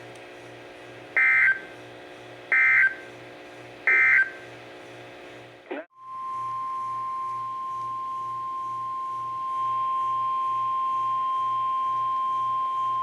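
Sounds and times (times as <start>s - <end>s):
steady warning alarm beep: 1.2s - 1.7s, 2.5s - 3.1s, 3.9s - 4.4s, 6.0s - 13.0s.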